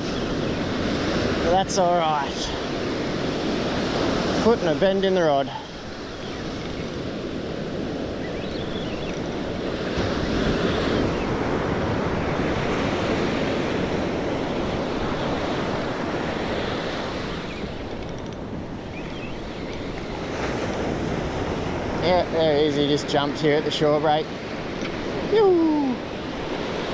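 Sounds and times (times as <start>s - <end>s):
wind on microphone: 0.0s - 22.6s.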